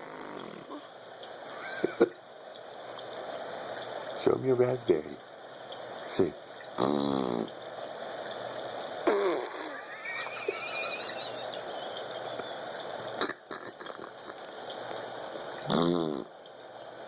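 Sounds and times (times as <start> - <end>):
baby blowing raspberry: 0.0 - 0.9, 6.8 - 7.5, 9.0 - 9.9, 13.2 - 14.5, 15.6 - 16.3
baby vocal buzz: 0.0 - 1.0, 6.8 - 7.5, 9.0 - 9.9, 13.2 - 14.5, 15.7 - 16.3.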